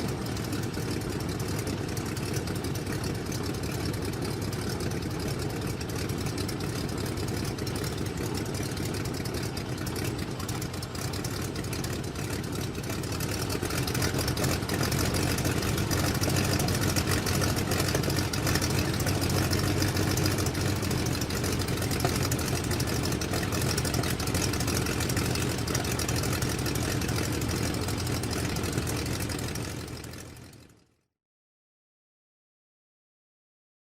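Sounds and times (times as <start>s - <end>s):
radial engine idling: 0.0s - 30.7s.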